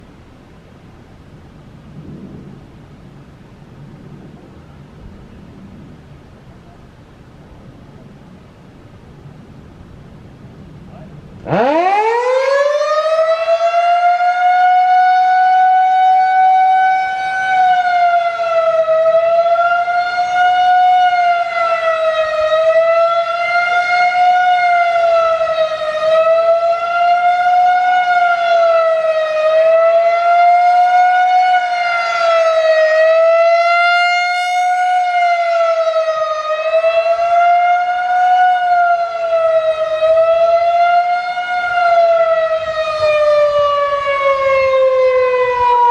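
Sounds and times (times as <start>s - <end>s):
warning siren wailing: 10.9s - 45.9s.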